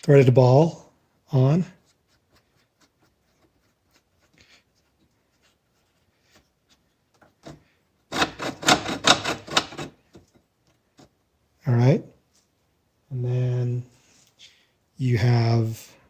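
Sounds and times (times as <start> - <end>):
rapid clicking and rattling: 8.1 - 10.0.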